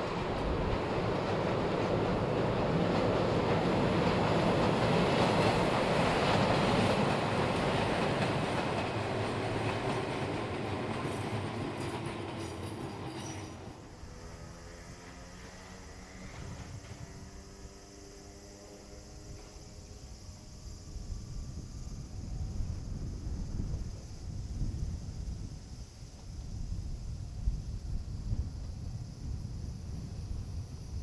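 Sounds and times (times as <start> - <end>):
electric train passing: 0.0 - 31.0.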